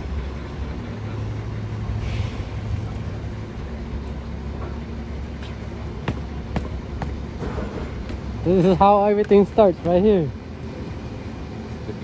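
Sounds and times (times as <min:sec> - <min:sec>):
vehicle running low rumble: 0:00.0 - 0:11.7.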